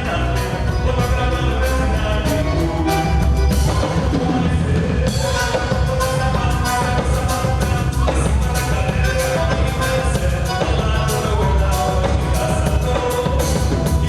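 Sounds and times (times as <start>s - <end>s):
dance music with drums and bass: 0.0s - 14.0s.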